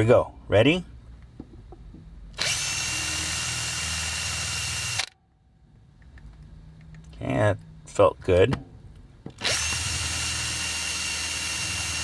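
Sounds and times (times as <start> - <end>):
power drill drilling: 2.4 - 5.1, 9.4 - 12.0.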